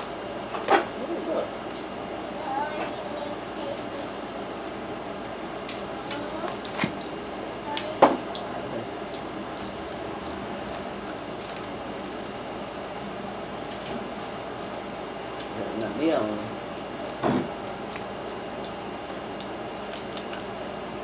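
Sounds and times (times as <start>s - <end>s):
steady background hum: 0.0s - 21.0s
crab shells cracking: 17.8s - 20.6s.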